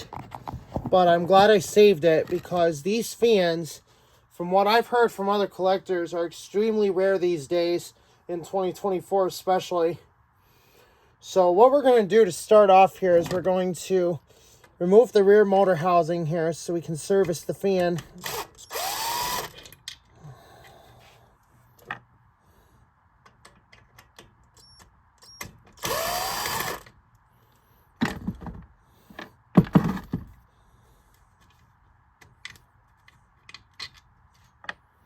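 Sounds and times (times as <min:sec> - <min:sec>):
power drill whirring: 0:18.1 - 0:19.6, 0:25.3 - 0:26.9.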